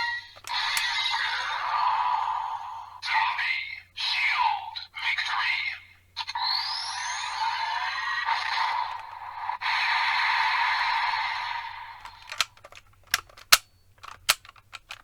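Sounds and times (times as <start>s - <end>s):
plastic clicks: 0.0s - 1.0s, 12.0s - 15.0s.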